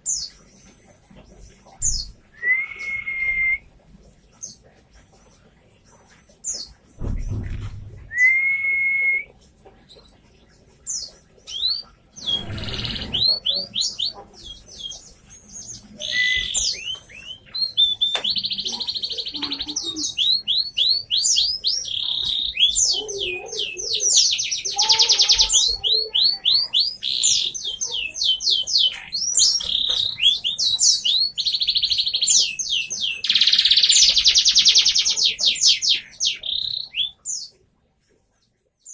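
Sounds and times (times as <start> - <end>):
low thump: 7.0 - 8.3
canary singing trills: 8.1 - 37.6.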